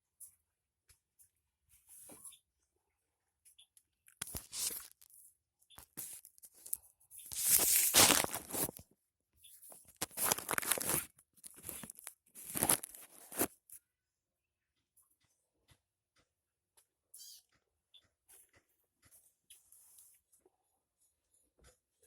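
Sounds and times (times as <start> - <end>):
hands rubbing skin and clothing: 4.2 - 5.0, 5.9 - 8.8, 10.0 - 13.5.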